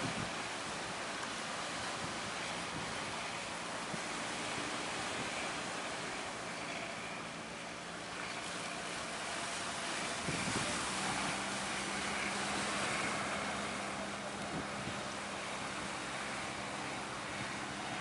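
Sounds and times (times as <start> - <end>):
strong wind: 0.0 - 6.7, 7.7 - 18.0
boat engine running: 0.0 - 18.0
sea waves rushing: 0.0 - 18.0.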